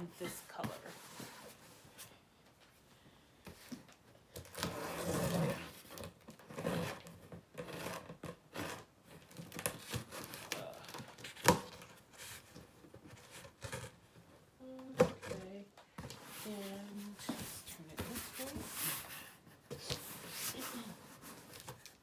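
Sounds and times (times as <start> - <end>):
cardboard box tearing and crinkling: 4.4 - 11.9.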